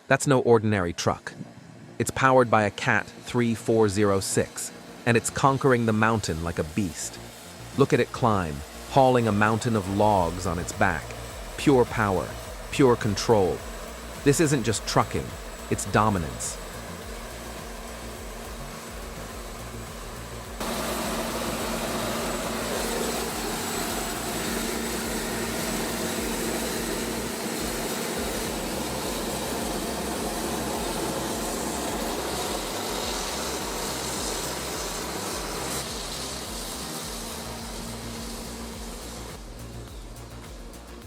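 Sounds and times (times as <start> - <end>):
heavy machinery drone: 0.0 - 41.0
grinding noise: 0.7 - 41.0.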